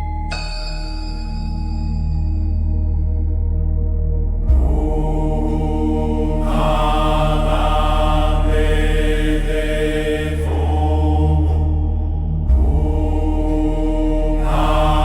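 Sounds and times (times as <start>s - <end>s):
tibetan bells ringing: 0.0s - 2.7s
deep steady drone: 1.7s - 15.0s.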